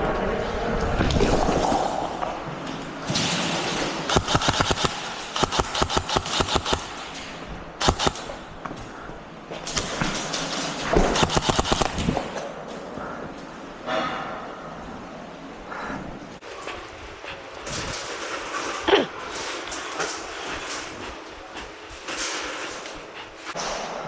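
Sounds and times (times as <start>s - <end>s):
airsoft rifles firing bursts: 4.1s - 8.6s, 11.0s - 12.4s.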